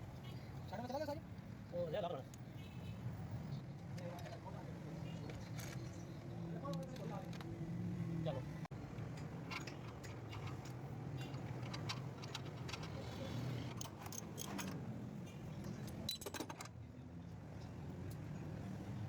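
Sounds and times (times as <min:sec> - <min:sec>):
small metallic clicks and clinks: 0:09.0 - 0:16.8.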